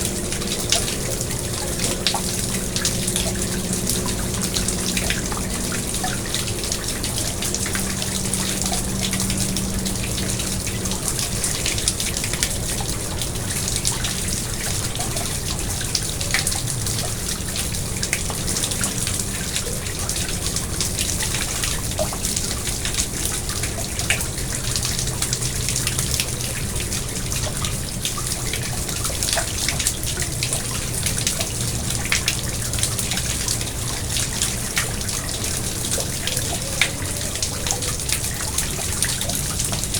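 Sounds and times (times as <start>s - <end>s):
water drips: 0.0s - 39.9s
water trickling and splashing: 0.0s - 39.9s.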